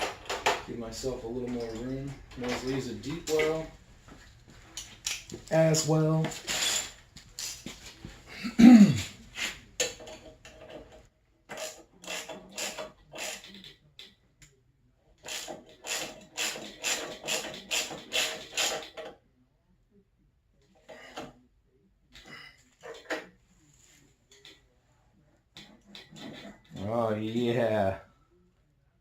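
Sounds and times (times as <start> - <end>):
hand ratchet clicking: 11.6 - 13.7, 15.2 - 19.0.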